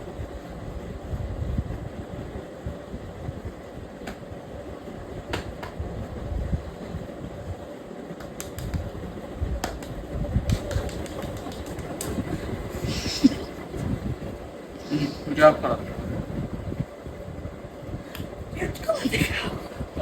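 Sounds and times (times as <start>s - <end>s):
hands rubbing oiled scalp: 8.2s - 8.9s, 9.6s - 13.6s
sharp clicks: 8.2s - 8.9s, 9.6s - 12.4s.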